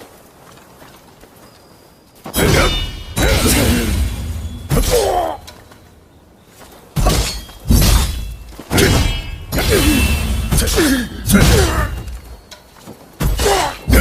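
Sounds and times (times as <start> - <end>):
crashing combat hits: 2.4 - 5.7, 7.0 - 12.3.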